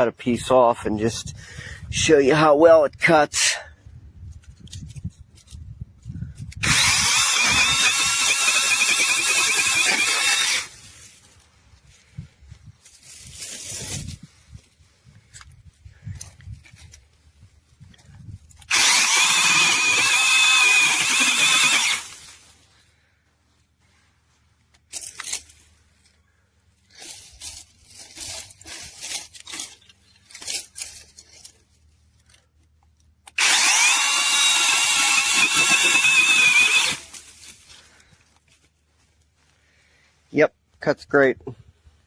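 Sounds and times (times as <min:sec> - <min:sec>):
branches cracking and rustling: 0:04.2 - 0:35.5, 0:36.1 - 0:39.9
mini chainsaw motor whining: 0:06.6 - 0:10.9, 0:18.6 - 0:22.4, 0:33.3 - 0:37.5.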